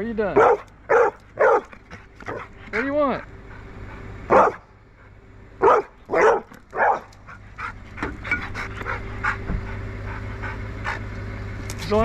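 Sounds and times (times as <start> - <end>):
steady low hum: 0.0 - 12.0
dog barking: 0.4 - 2.5, 4.3 - 4.7, 5.6 - 7.2.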